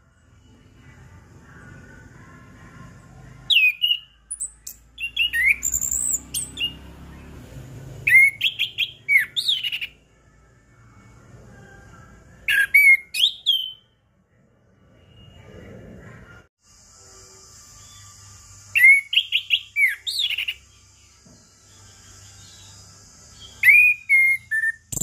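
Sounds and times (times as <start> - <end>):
thrush singing whistled notes: 3.4 - 10.1, 12.4 - 14.0, 17.5 - 25.0.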